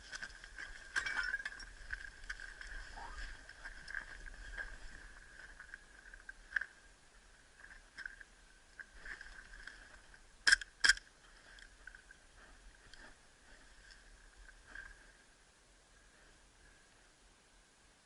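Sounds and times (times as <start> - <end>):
faint crackles of movement: 0.0 - 17.2.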